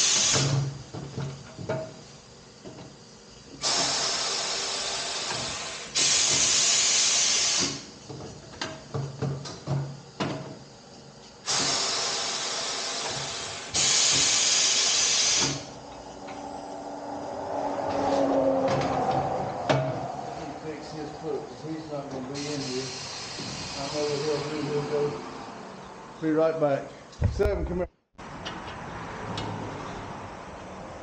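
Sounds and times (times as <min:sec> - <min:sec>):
loud hiss bursts: 0:00.0 - 0:00.8, 0:03.5 - 0:08.0, 0:11.4 - 0:15.8, 0:21.8 - 0:25.2.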